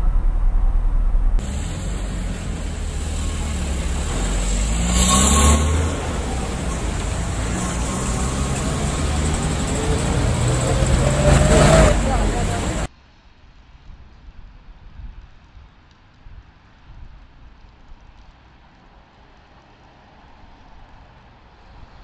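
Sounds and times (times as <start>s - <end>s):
rush of noise: 0.0s - 12.9s
vehicle engine and road rumble: 0.0s - 12.9s.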